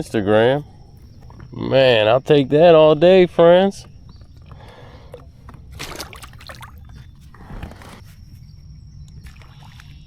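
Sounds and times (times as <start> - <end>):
water trickling and sloshing: 3.7 - 8.3, 9.1 - 10.0
short water splashes: 3.8 - 8.0.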